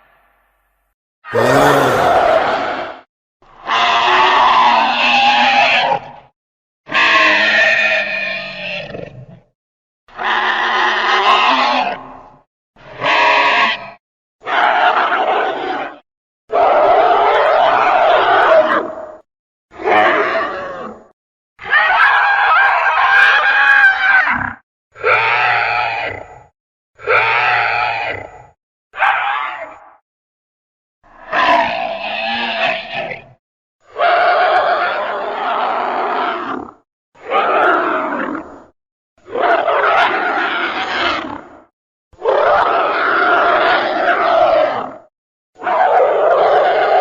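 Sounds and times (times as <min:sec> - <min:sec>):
monster calls: 0:01.3 - 0:03.0
monster screeching roar: 0:01.3 - 0:03.0.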